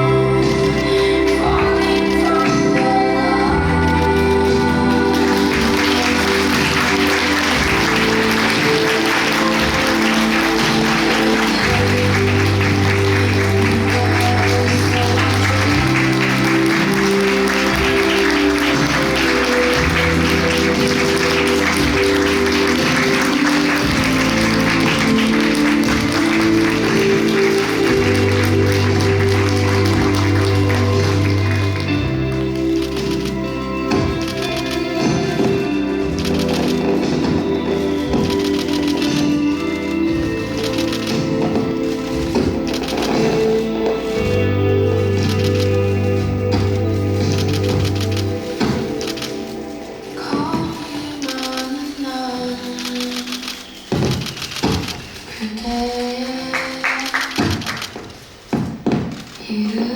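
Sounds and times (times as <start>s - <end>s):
audience applauding: 0.0s - 52.0s, 52.6s - 59.7s.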